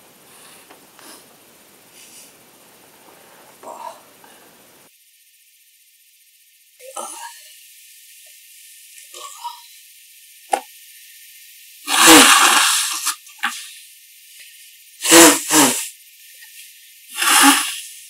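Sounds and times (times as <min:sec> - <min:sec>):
person blowing nose: 0:11.9 - 0:13.7, 0:15.0 - 0:15.9, 0:17.1 - 0:17.9.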